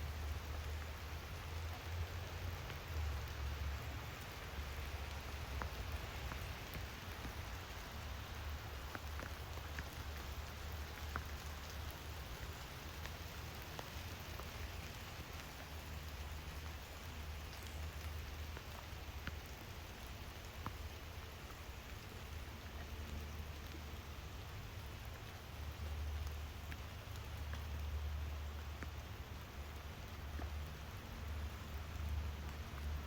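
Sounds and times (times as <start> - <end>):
constant low rumble: 0.0 - 33.0
steady rain: 0.0 - 33.0.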